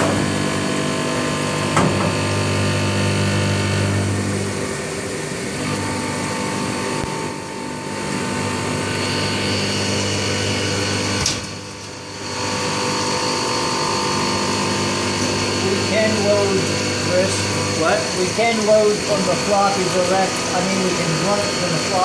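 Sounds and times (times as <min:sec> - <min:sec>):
machine low hum: 0:00.0 - 0:22.0
milling machine spindle whine: 0:00.0 - 0:22.0.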